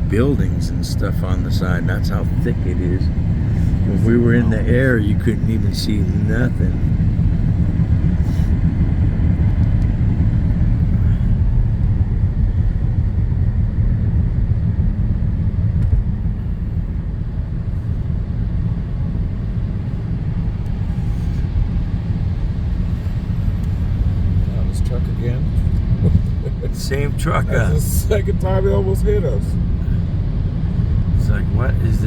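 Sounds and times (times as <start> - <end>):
car engine and tyres rumbling: 0.0 - 32.0.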